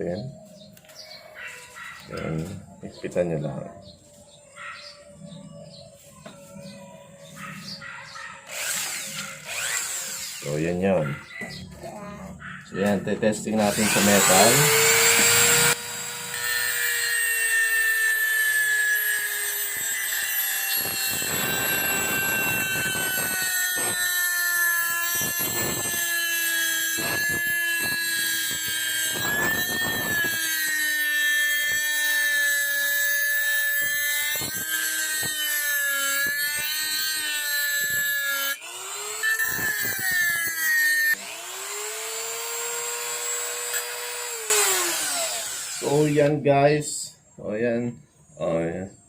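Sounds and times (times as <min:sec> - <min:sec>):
grinding on metal: 0:07.2 - 0:46.4
rotary grinder whine: 0:08.4 - 0:11.8, 0:12.8 - 0:46.4.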